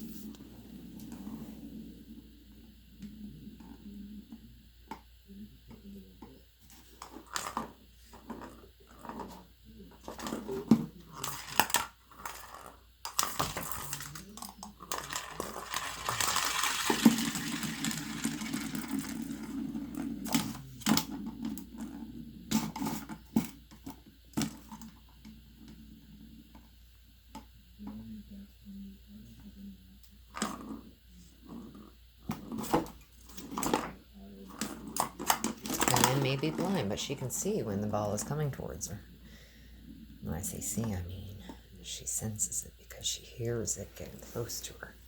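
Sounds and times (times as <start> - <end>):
ball rolling in plastic track: 6.8 - 23.5, 30.3 - 39.0.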